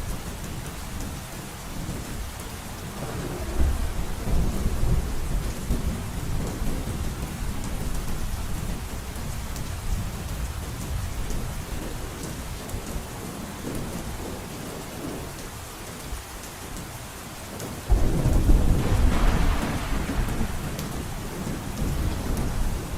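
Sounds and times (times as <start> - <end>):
heavy rain drumming on a roof: 0.0 - 22.9
thunder rumbling: 2.8 - 8.8, 17.9 - 22.9.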